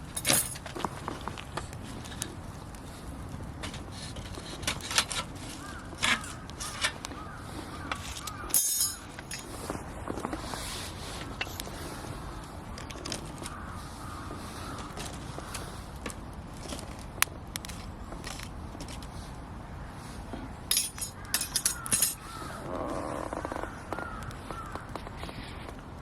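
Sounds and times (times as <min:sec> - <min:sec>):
fire hissing: 0:00.0 - 0:06.4, 0:09.1 - 0:20.7
campfire crackling and snapping: 0:00.0 - 0:26.0.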